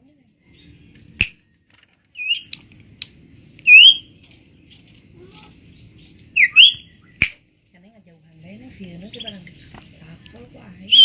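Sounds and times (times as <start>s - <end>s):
bird whistled calls: 3.6s - 4.1s, 6.4s - 7.3s.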